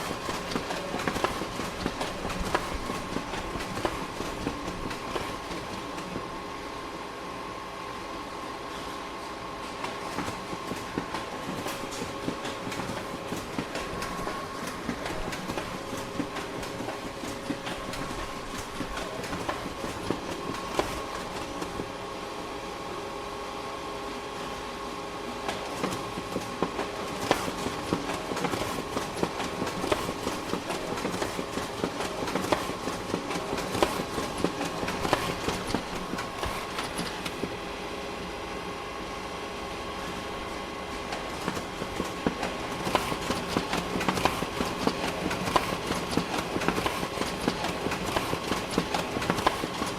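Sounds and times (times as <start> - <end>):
photocopier motor hum: 0.0 - 6.8, 9.6 - 22.3, 25.4 - 49.9
photocopier clicking and clattering: 25.5 - 37.5, 41.1 - 49.9.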